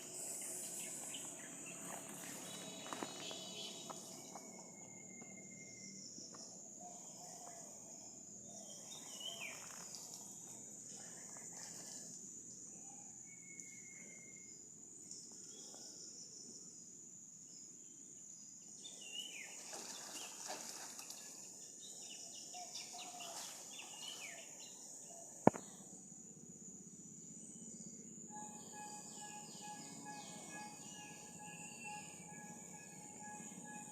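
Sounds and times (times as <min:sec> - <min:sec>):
bird chirps: 0:00.0 - 0:07.7, 0:08.5 - 0:10.2, 0:28.3 - 0:33.9
high-pitched insect drone: 0:00.0 - 0:17.7, 0:23.8 - 0:33.9.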